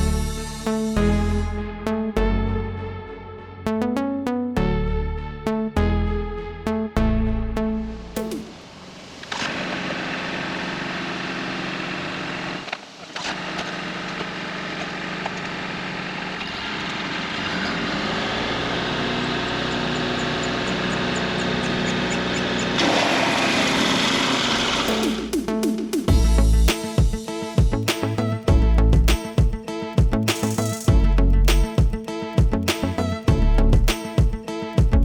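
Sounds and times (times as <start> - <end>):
tractor engine driving wood chipper: 9.2 - 25.1.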